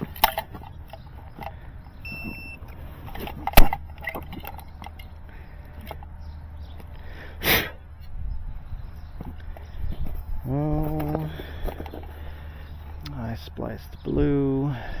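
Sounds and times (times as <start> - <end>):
small handling clicks: 0.0 - 6.1
low wind rumble: 0.0 - 15.0
short electronic beep: 2.0 - 2.6
sharp loud click: 3.4 - 3.8.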